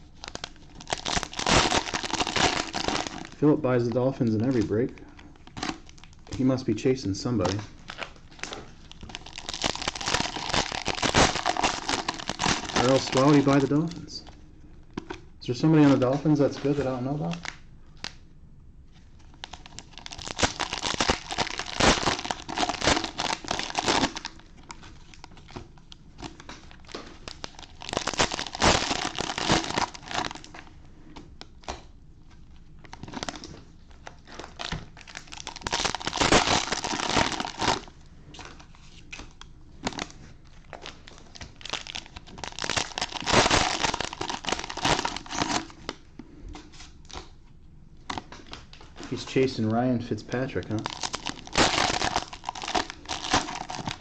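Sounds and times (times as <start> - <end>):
cellophane crinkling and tearing: 0.0 - 14.4, 15.0 - 18.2, 18.9 - 47.4, 48.0 - 54.0.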